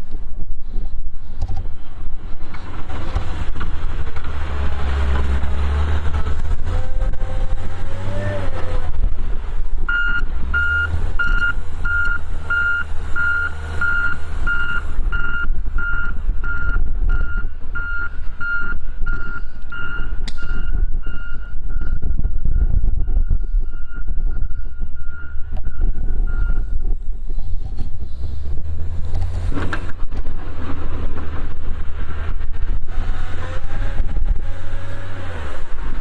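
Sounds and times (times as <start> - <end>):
heavy vehicle engine running: 0.0 - 36.0
reversing alarm beeping: 9.9 - 26.9.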